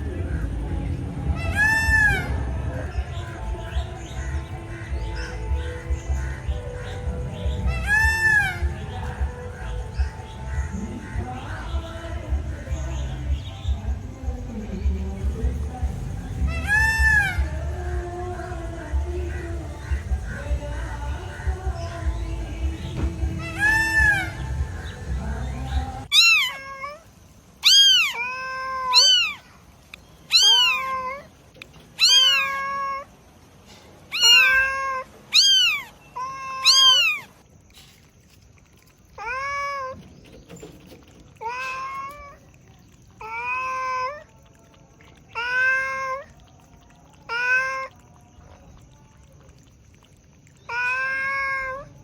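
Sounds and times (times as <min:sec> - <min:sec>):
cat meowing: 0:07.6 - 0:08.8, 0:23.3 - 0:24.4, 0:26.1 - 0:29.5, 0:30.3 - 0:31.4, 0:32.0 - 0:33.1, 0:34.1 - 0:37.4, 0:39.2 - 0:40.0, 0:41.4 - 0:42.5, 0:43.2 - 0:44.4, 0:45.3 - 0:46.4, 0:47.2 - 0:48.1, 0:50.7 - 0:52.0.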